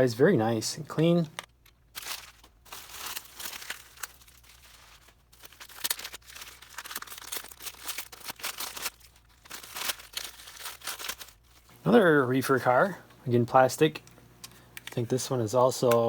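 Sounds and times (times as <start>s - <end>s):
packing material crinkling: 0.9s - 12.0s.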